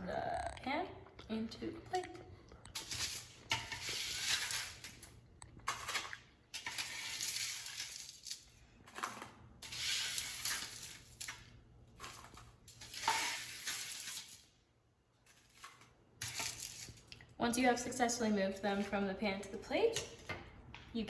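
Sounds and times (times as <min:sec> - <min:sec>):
spatula scraping baking pan: 0:02.8 - 0:05.1, 0:05.7 - 0:08.2, 0:08.9 - 0:11.1, 0:12.0 - 0:14.4.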